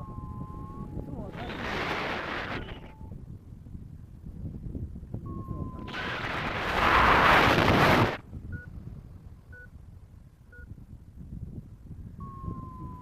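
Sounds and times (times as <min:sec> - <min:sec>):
electronic variometer beeps: 0:00.0 - 0:01.6, 0:02.5 - 0:03.2, 0:05.2 - 0:06.0, 0:08.5 - 0:08.7, 0:09.5 - 0:09.8, 0:10.5 - 0:10.8, 0:12.2 - 0:13.0
wind noise on microphone: 0:00.0 - 0:13.0.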